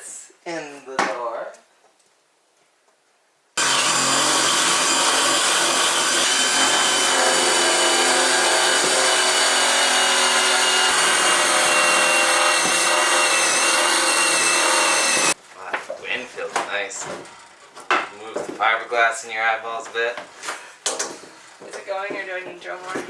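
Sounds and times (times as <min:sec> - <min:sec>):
power drill whine: 0:03.6 - 0:15.4.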